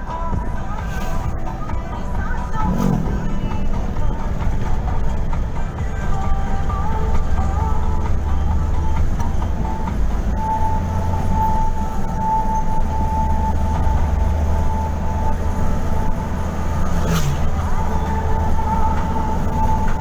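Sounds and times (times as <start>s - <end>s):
vehicle rumble: 0.0s - 20.0s
high-pitched tone: 0.8s - 6.1s.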